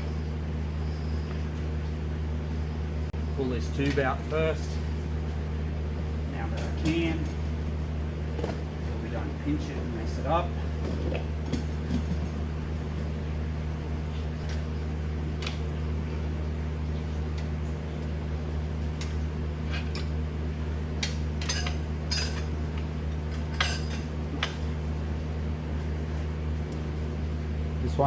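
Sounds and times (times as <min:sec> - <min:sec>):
low mechanical hum: 0:00.0 - 0:28.0.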